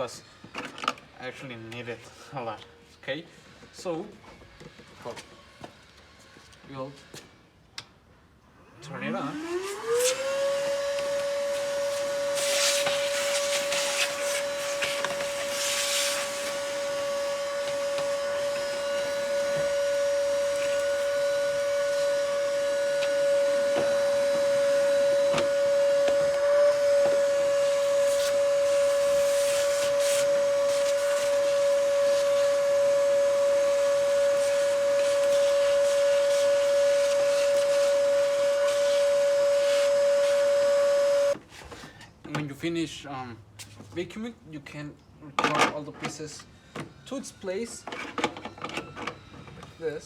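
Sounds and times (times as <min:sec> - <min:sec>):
shop vacuum motor whine: 0:08.8 - 0:41.4.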